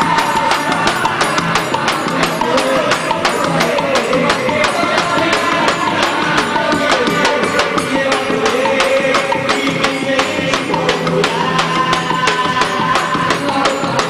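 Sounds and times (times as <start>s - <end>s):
quick percussion beat: 0.0s - 14.0s.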